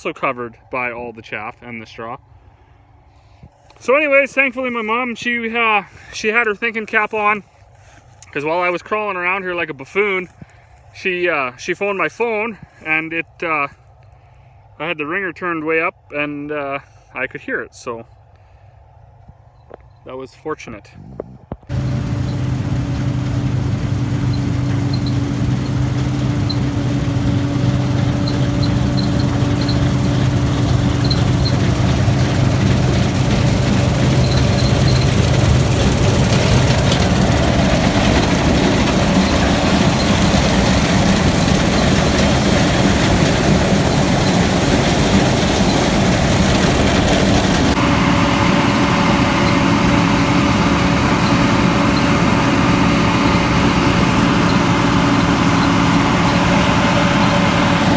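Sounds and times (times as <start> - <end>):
loud rushing noise: 21.7 - 51.0
combine harvester engine hum: 21.7 - 57.9.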